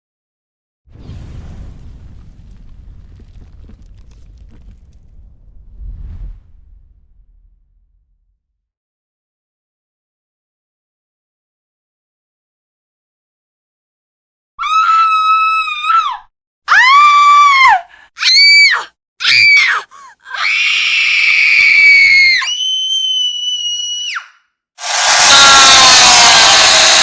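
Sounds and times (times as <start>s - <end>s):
shrill high-pitched screams: 14.6s - 27.0s
whining power tool: 24.8s - 27.0s.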